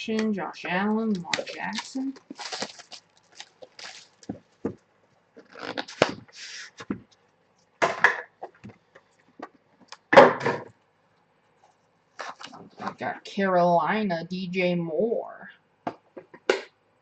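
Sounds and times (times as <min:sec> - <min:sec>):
packaging scraping and rustling: 0:01.1 - 0:04.7, 0:05.4 - 0:06.9.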